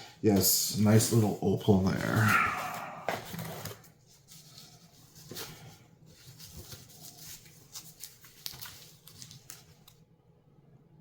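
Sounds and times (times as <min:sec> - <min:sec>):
packaging rustling: 0:03.2 - 0:10.0.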